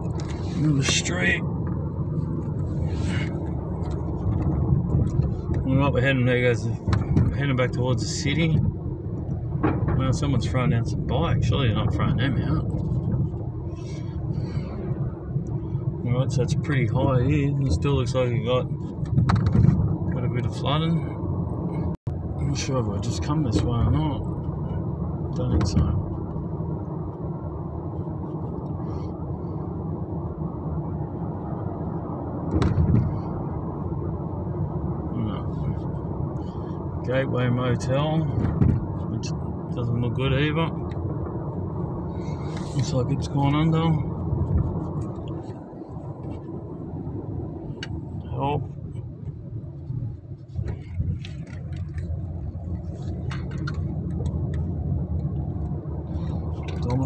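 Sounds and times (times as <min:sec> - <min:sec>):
car engine and tyre rumble: 0:00.0 - 0:57.0
light clicks and rattles: 0:50.5 - 0:57.0.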